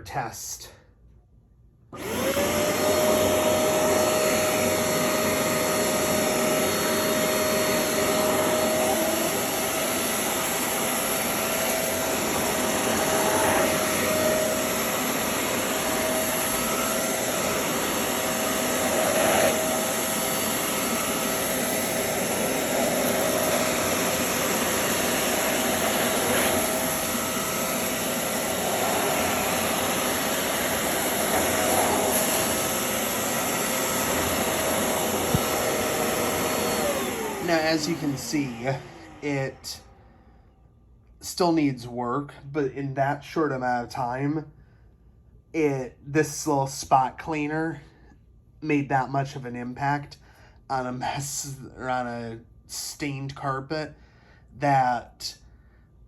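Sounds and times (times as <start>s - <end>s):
carpet cleaner motor whine: 2.0s - 40.0s.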